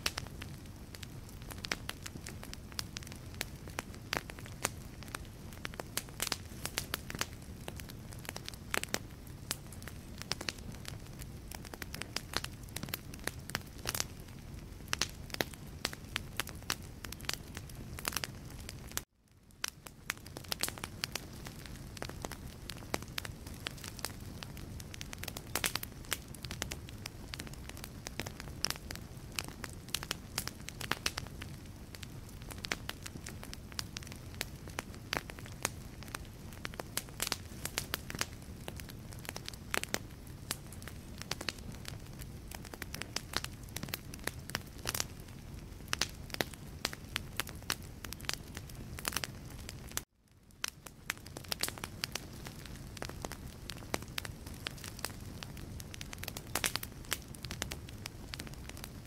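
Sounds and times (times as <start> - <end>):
logs crackling and popping: 0.0 - 59.0
low rumble of flames: 0.0 - 59.0.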